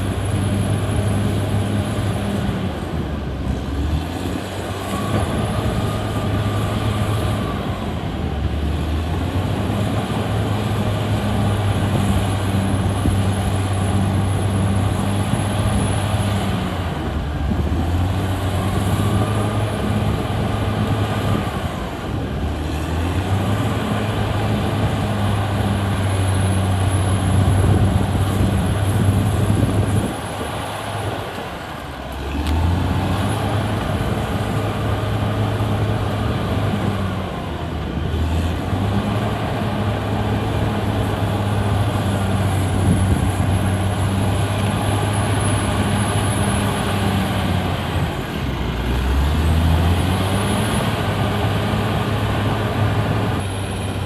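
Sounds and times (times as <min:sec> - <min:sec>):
bulldozer diesel engine under load: 0:00.0 - 0:54.0.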